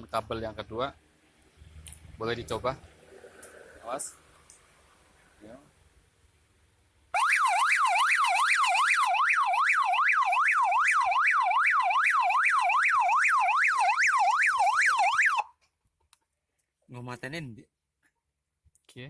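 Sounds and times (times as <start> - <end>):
motorcycle siren yelping: 7.1 - 15.6.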